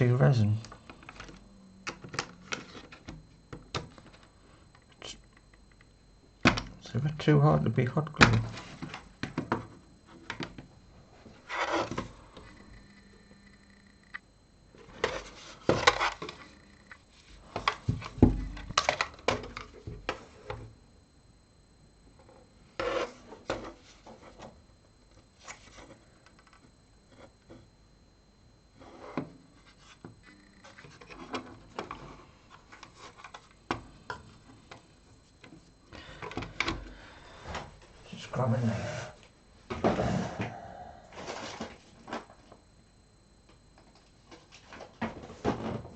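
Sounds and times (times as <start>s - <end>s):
plastic radio and tools handled: 0.7s - 5.9s, 11.3s - 20.7s, 29.6s - 36.9s.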